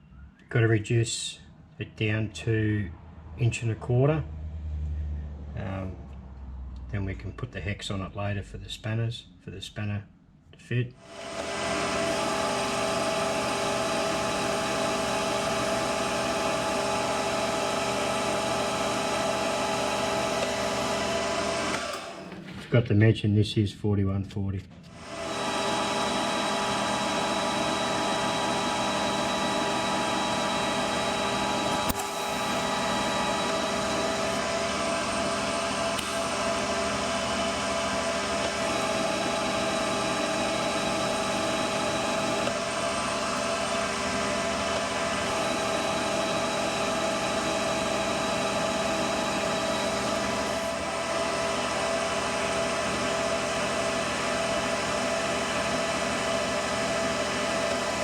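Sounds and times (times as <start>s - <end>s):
gear and motor whine: 24.9s - 58.0s
metal lathe cutting steel: 25.0s - 58.0s.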